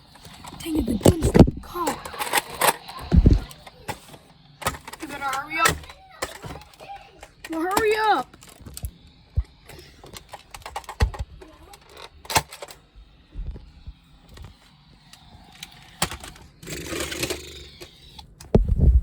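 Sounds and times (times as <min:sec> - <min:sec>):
plastic toy blaster clicks: 0:01.8 - 0:08.9, 0:10.1 - 0:12.8, 0:15.1 - 0:18.5.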